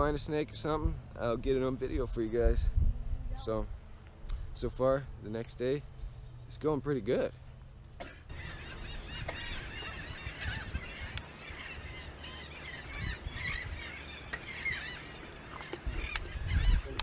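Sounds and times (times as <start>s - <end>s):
flock of birds calling: 8.3s - 17.0s.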